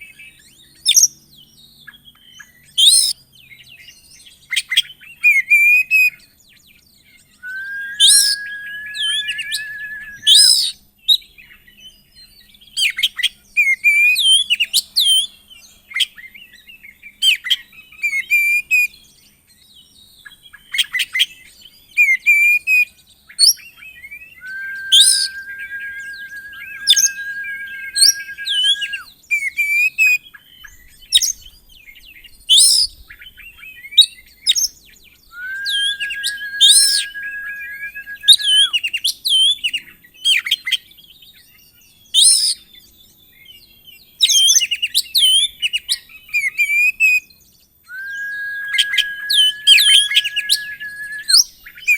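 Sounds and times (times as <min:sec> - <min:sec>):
bird singing varied song: 0:06.1 - 0:13.6, 0:22.9 - 0:29.6, 0:30.2 - 0:38.8, 0:47.3 - 0:51.9.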